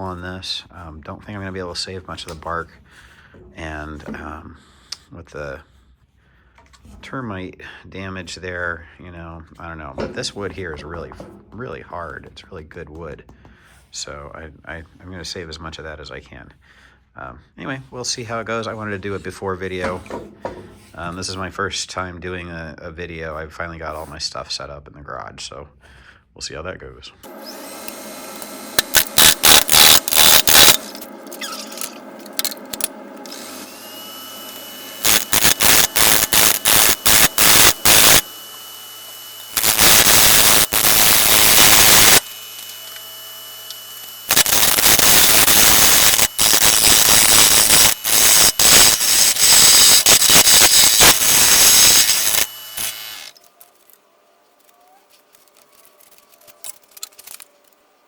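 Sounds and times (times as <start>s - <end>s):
power tool rasping into wood: 27.4s - 53.4s.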